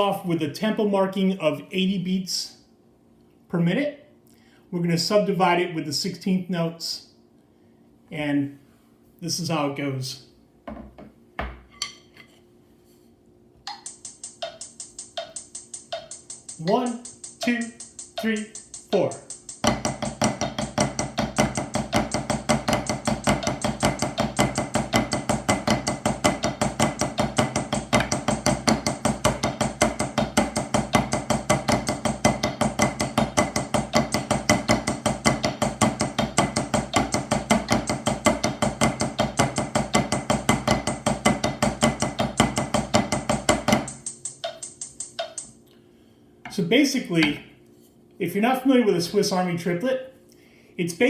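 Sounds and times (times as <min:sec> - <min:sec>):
drumsticks playing rapid strokes: 0:13.7 - 0:45.6.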